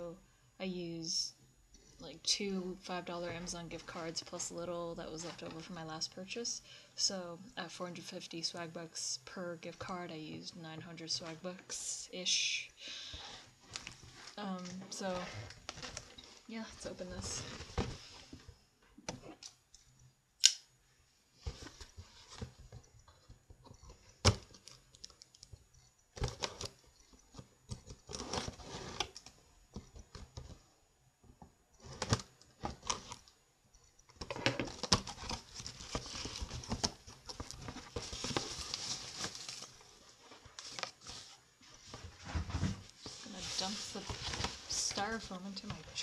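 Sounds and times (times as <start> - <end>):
styrofoam packing rustling: 34.3 - 46.0.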